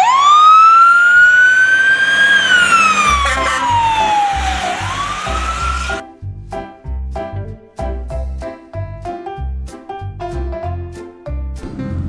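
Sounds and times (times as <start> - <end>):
wailing siren: 0.0 - 6.0
children's music with thumping beat: 3.1 - 11.9.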